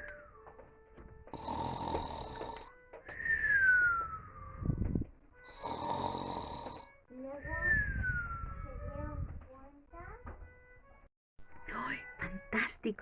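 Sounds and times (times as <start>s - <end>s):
cartoon snoring: 1.3s - 2.7s, 5.5s - 7.0s.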